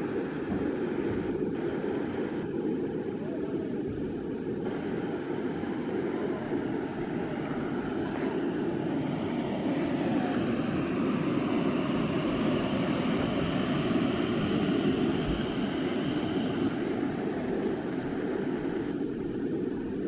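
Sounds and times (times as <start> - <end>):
high whine: 4.4 - 20.0
engine droning: 4.6 - 19.9.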